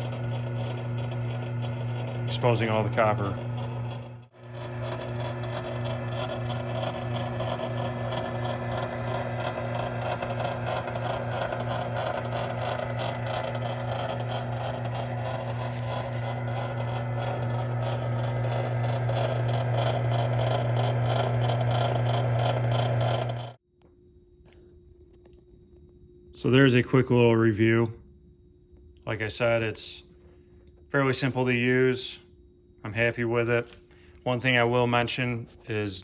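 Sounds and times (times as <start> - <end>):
fast regular rattle: 0.0 - 23.6
motor hum: 0.0 - 23.6.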